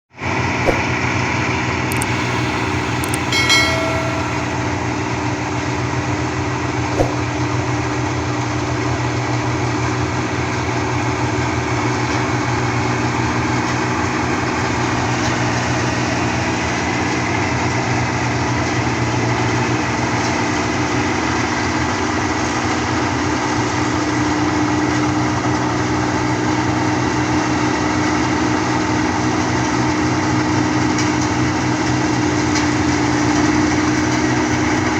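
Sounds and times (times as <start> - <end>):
high pitched tone: 1.9 - 4.9.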